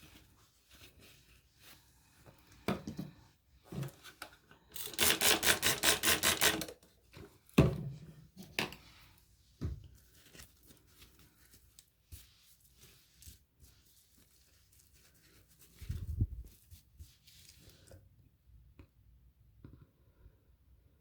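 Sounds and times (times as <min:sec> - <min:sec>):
scrubbing strokes on a knife: 0:08.9 - 0:18.0.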